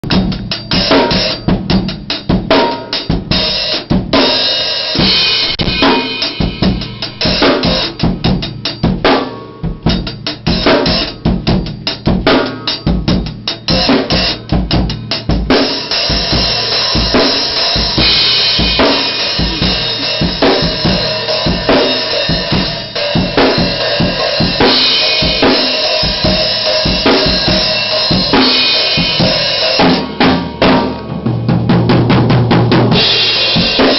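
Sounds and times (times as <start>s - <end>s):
bass drum: 0.0s - 33.9s
cymbals ringing: 4.4s - 9.7s, 13.7s - 30.9s
snare drum: 5.0s - 8.0s.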